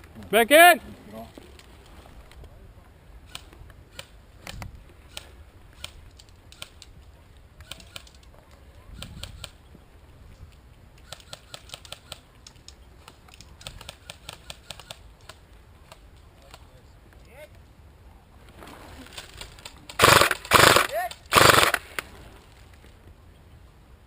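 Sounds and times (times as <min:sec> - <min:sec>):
airsoft guns firing: 0:19.9 - 0:22.0.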